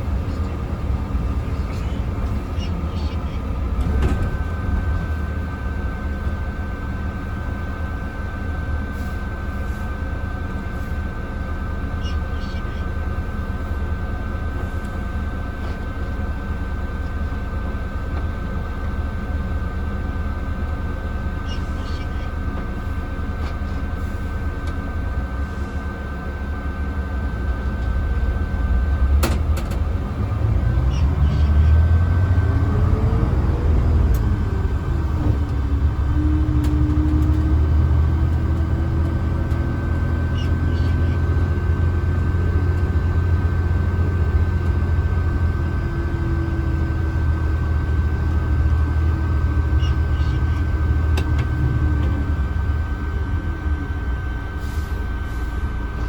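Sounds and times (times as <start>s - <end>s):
bus diesel engine: 0.0s - 56.0s
steady high whine: 0.0s - 56.0s.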